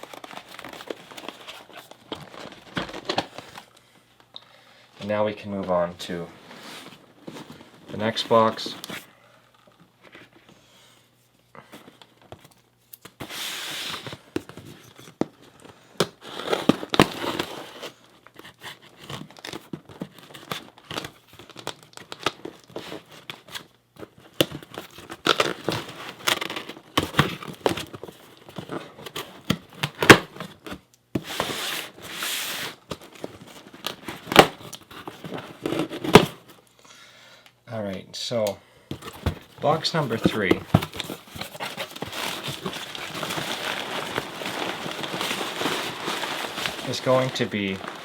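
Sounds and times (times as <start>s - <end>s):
packing material crinkling: 0.0s - 4.4s, 39.0s - 48.0s
cardboard tearing: 16.2s - 23.6s, 24.4s - 36.5s, 39.0s - 48.0s.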